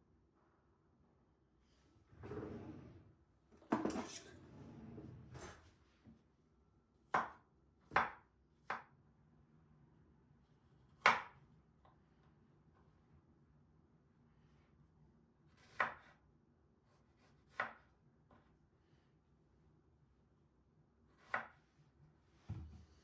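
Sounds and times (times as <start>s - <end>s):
dishes clattering: 3.7s - 4.4s
dishes scraping: 3.7s - 4.5s.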